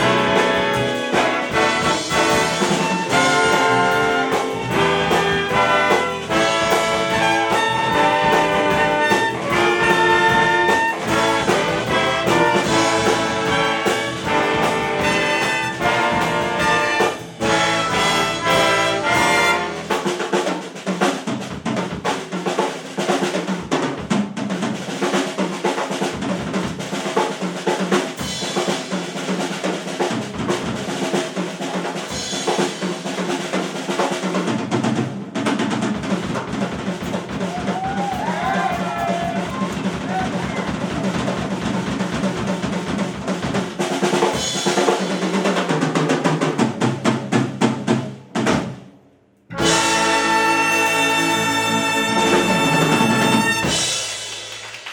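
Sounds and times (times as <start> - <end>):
big band horns playing: 0.0 - 20.6, 36.6 - 45.6, 49.5 - 54.9
drum kit: 0.0 - 54.9.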